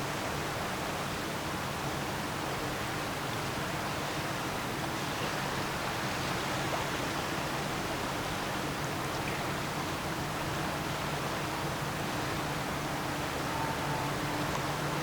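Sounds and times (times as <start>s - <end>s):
rushing water wash: 2.0s - 15.0s
low ship engine drone: 5.4s - 15.0s.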